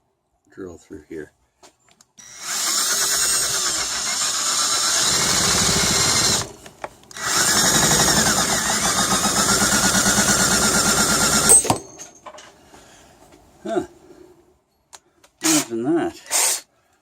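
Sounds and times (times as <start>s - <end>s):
power drill hole saw cutting pipe: 2.2s - 11.8s, 15.4s - 16.6s.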